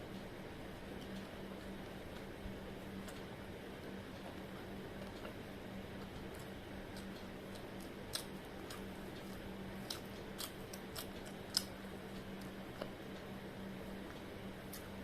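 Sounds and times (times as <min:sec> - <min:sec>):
crisp chewing crunches: 0:06.0 - 0:13.0.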